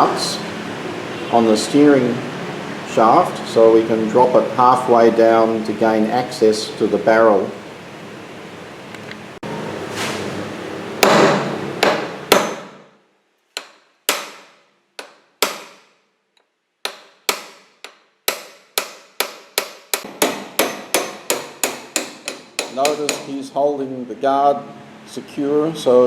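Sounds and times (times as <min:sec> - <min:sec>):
hammer striking metal: 0:11.0 - 0:12.9, 0:13.6 - 0:15.9, 0:16.9 - 0:23.4.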